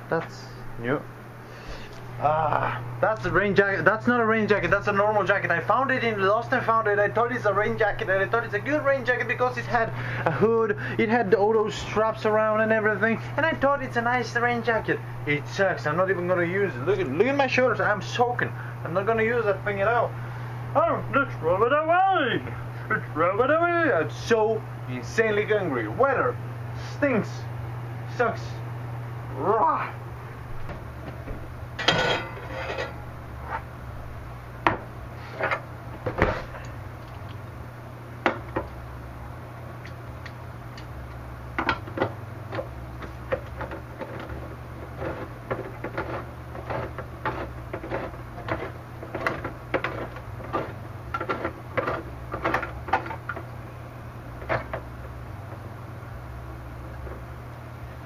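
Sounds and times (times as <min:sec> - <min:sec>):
steady low hum: 0:00.0 - 0:58.0
objects knocking and clicking: 0:41.6 - 0:53.5.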